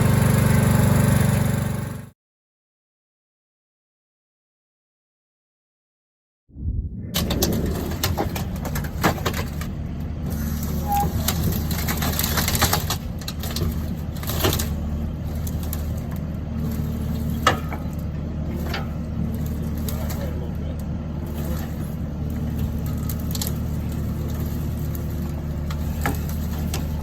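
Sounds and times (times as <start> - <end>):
heavy engine droning: 0.0 - 2.1, 6.5 - 27.0
knocks and crunching: 7.1 - 27.0.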